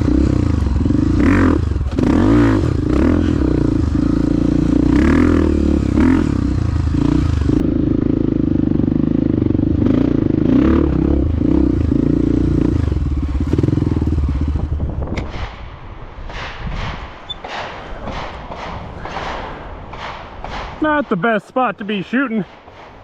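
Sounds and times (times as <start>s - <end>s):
dirt bike engine revving: 0.0s - 15.2s.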